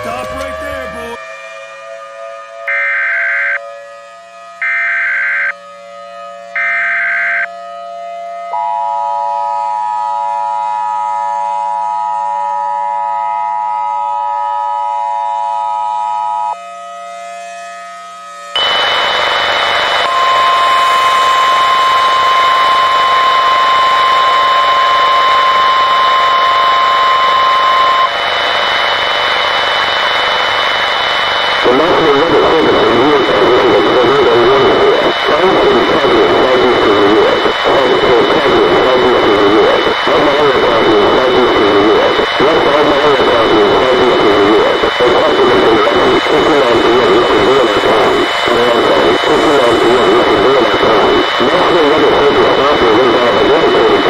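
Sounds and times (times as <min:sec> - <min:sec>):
loud radio static: 0:00.0 - 0:01.2, 0:18.6 - 0:54.0
steady high whine: 0:00.0 - 0:01.3, 0:08.5 - 0:16.7, 0:18.0 - 0:54.0
wavering siren-like tone: 0:00.0 - 0:28.1
data header tones: 0:18.6 - 0:28.1, 0:31.6 - 0:54.0
two-tone attention signal: 0:20.1 - 0:28.1.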